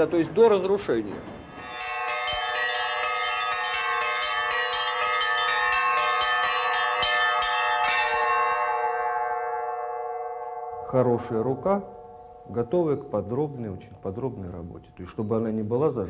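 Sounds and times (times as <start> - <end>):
higher church bells struck: 0.0 - 15.7
low bell ringing: 0.0 - 16.0.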